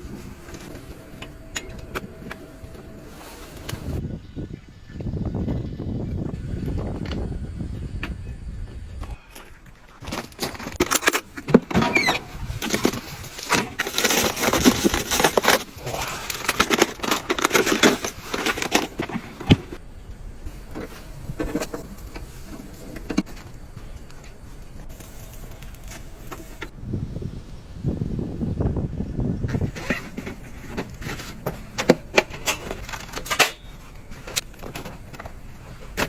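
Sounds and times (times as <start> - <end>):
objects clinking and knocking: 9.4 - 19.8, 29.7 - 36.0.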